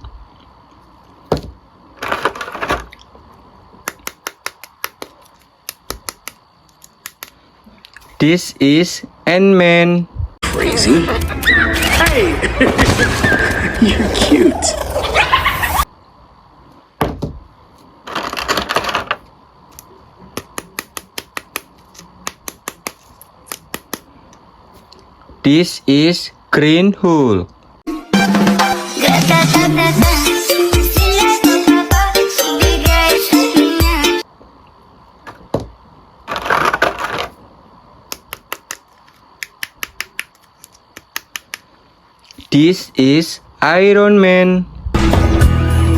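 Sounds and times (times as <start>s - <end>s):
sharp plastic clicks: 3.8s - 7.4s, 19.7s - 24.1s, 38.1s - 41.7s.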